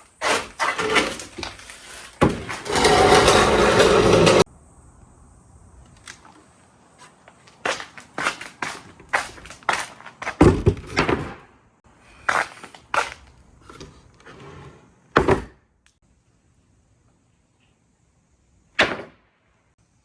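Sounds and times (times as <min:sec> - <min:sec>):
marbles rolling rumble: 0:02.6 - 0:04.5.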